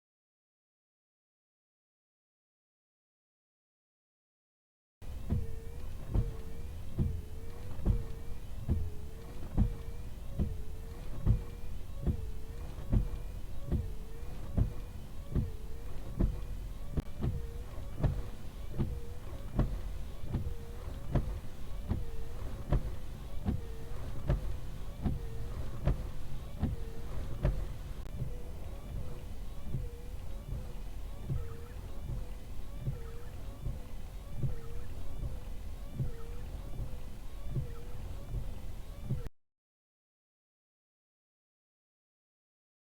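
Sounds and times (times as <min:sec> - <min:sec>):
wiper blades sweeping windshield: 0:05.0 - 0:39.3
wiper click: 0:05.0 - 0:39.3.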